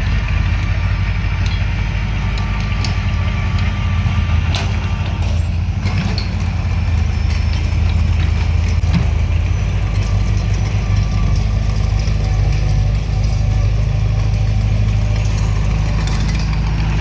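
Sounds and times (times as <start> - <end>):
bulldozer diesel engine droning: 0.0 - 17.0.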